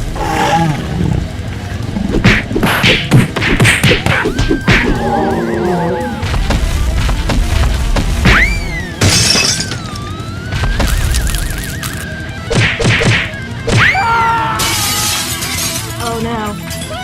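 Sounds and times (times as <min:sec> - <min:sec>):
swooping tones: 0:00.0 - 0:12.8
background music: 0:00.0 - 0:17.0
sharp hits: 0:01.8 - 0:14.0
warbling held tone: 0:04.3 - 0:06.2.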